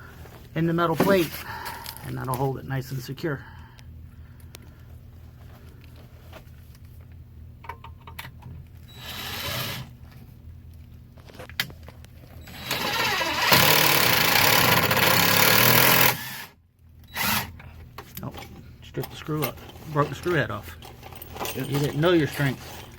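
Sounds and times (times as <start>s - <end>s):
impact driver driving screw: 12.5s - 16.5s.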